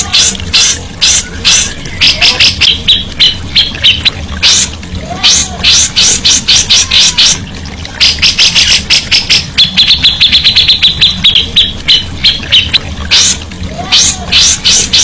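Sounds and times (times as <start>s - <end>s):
songbird singing with trills: 8.0s - 13.4s.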